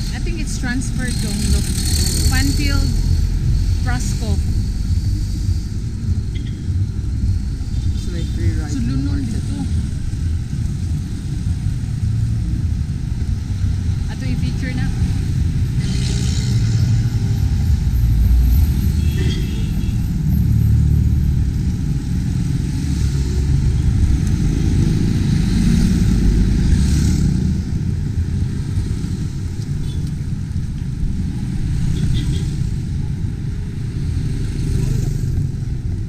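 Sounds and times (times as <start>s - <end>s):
rushes of wind: 0.0s - 36.0s
vehicle rumbling on road: 0.0s - 36.0s.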